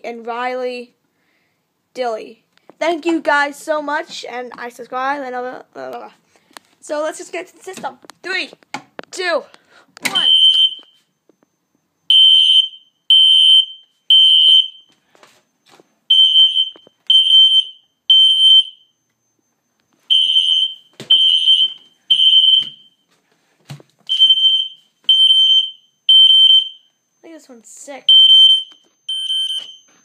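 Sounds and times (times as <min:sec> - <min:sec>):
fire alarm horn blasts: 0:10.2 - 0:11.0, 0:12.1 - 0:14.9, 0:16.1 - 0:19.0, 0:20.1 - 0:23.0, 0:24.1 - 0:26.9.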